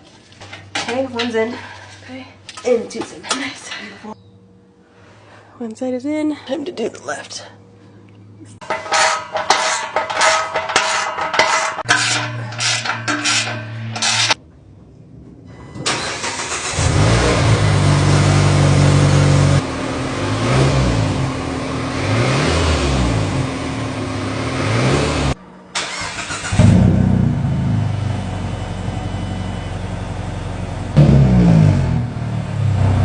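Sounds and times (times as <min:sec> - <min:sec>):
car engine revving through exhaust: 0:16.7 - 0:25.4, 0:30.8 - 0:33.0.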